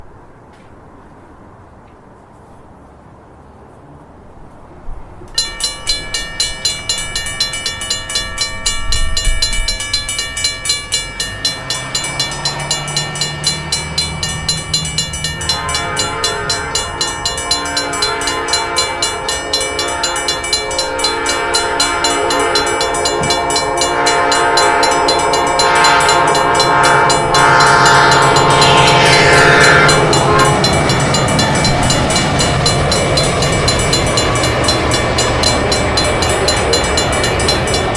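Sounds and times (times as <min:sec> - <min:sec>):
passing train rumble: 0:00.0 - 0:37.9
railroad crossing bells ringing: 0:05.3 - 0:37.9
locomotive air horn: 0:15.2 - 0:31.7.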